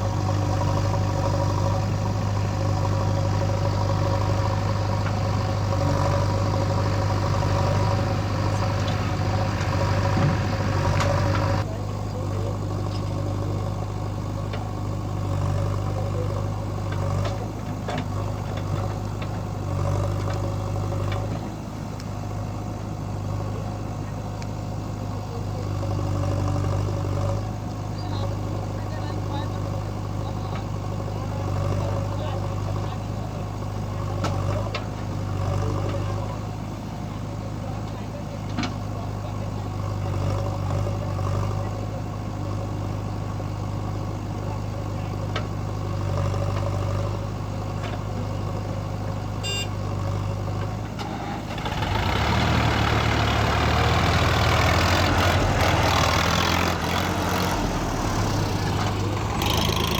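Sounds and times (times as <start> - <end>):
diesel engines running: 0.0 - 59.9
short knocks: 8.0 - 11.6.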